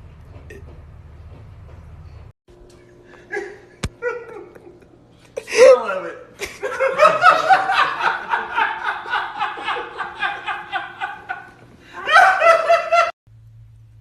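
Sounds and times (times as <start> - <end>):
person laughing hard: 3.3 - 4.9, 6.4 - 13.2.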